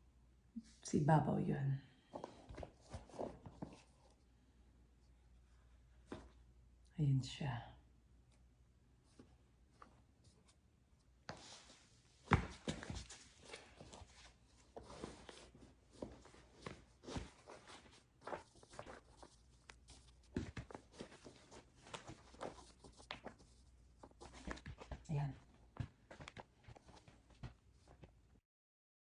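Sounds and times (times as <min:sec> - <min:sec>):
taps scuffs and rustling: 0:11.3 - 0:28.2.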